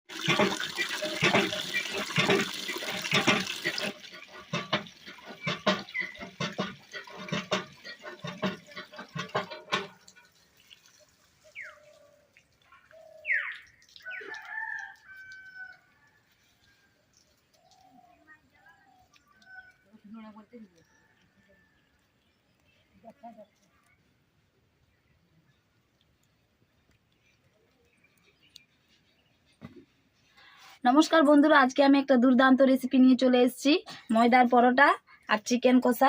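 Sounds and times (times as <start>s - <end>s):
chickens clucking: 0.2s - 10.0s
rooster crowing: 14.0s - 16.2s.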